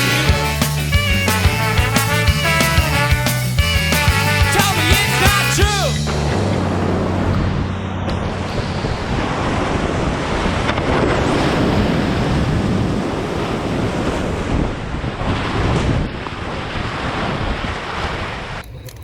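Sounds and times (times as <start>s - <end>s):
wind buffeting microphone: 6.4s - 18.6s.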